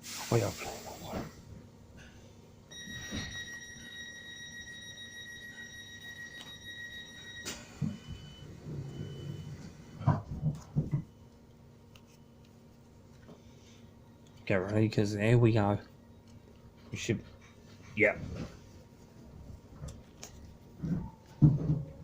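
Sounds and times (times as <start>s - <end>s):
low steady hum: 0.5s - 22.0s
short beeps: 2.7s - 9.6s
steady high warning tone: 2.7s - 10.1s.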